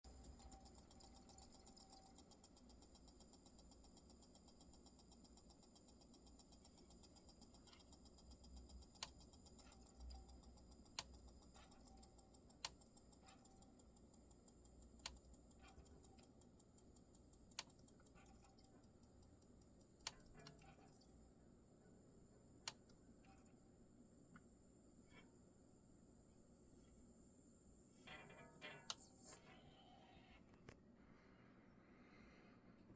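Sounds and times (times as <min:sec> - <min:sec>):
sharp clicks: 0:00.1 - 0:21.2, 0:22.5 - 0:23.4
disc mechanism spinning: 0:00.1 - 0:30.2
faint low hum: 0:00.1 - 0:32.9.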